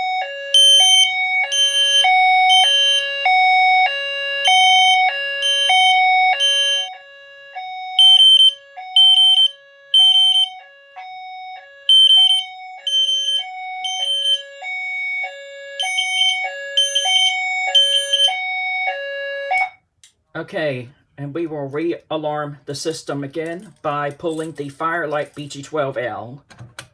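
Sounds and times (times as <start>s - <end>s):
fire alarm horn beeps: 0.0s - 19.8s
two-note high-low alarm tone: 4.5s - 19.8s.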